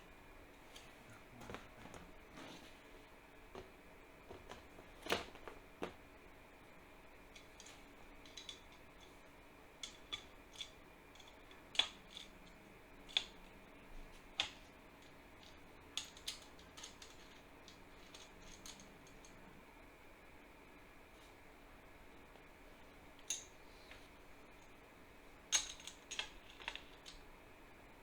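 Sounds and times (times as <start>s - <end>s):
small metal parts clicking: 7.3s - 9.2s, 9.8s - 13.6s, 14.3s - 19.4s, 25.5s - 27.2s.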